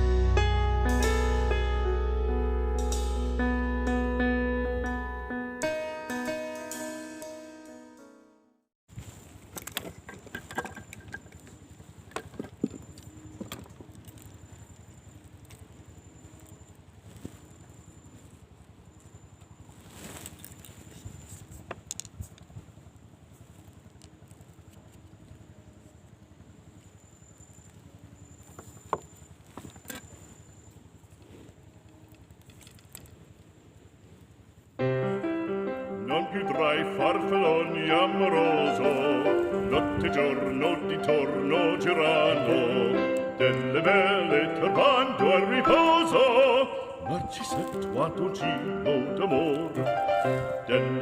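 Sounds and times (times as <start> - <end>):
music: 0.0 - 8.7, 34.8 - 51.0
faint high whine: 10.6 - 21.7, 22.4 - 33.1.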